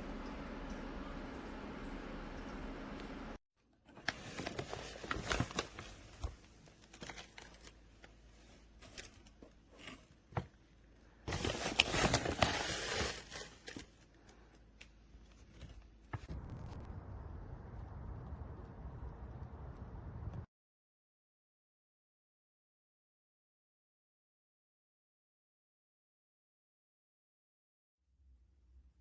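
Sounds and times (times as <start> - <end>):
crinkling and rustling: 3.8 - 10.7, 11.3 - 16.9.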